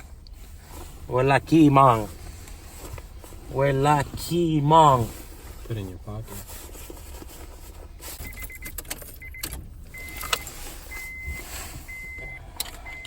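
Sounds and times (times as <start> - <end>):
car keys jangling: 8.2 - 11.2
ignition key clicks: 8.2 - 11.2
dashboard warning chime beeping: 8.2 - 13.0.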